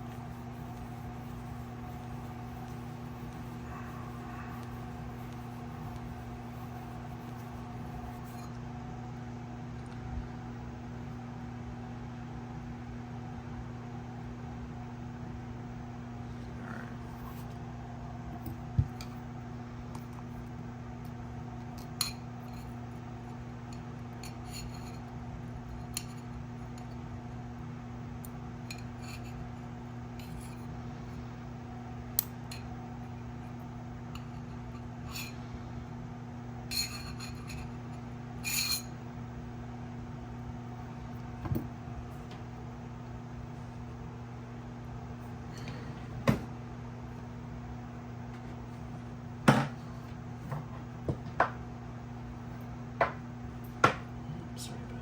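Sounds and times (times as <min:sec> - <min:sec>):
low electrical hum: 0:00.0 - 0:55.0
metal tools clicking and scraping: 0:30.2 - 0:30.7, 0:38.4 - 0:38.9.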